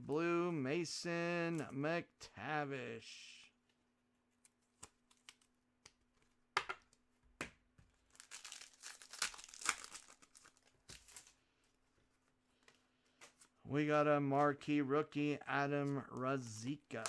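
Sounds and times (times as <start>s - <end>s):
foil wrapper crinkling and tearing: 8.0s - 11.4s, 16.2s - 17.0s.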